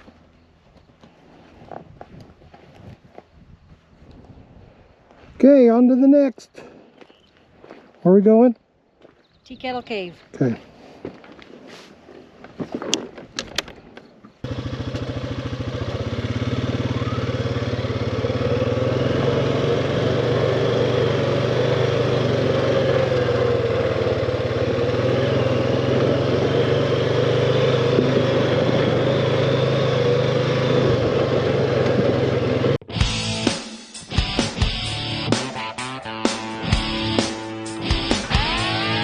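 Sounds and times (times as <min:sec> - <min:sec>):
atv engine running: 0:14.4 - 0:33.4.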